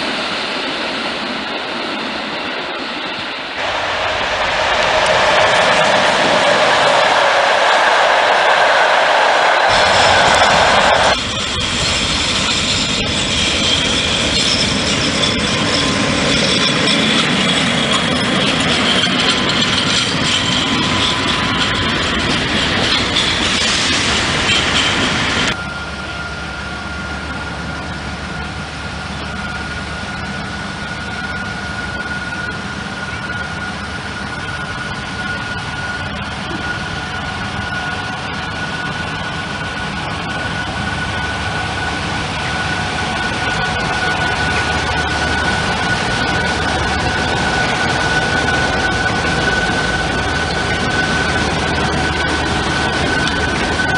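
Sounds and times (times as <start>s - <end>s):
train rolling past: 0.0s - 53.9s
train engine idling: 3.0s - 53.9s
thin steady whine: 3.6s - 53.9s.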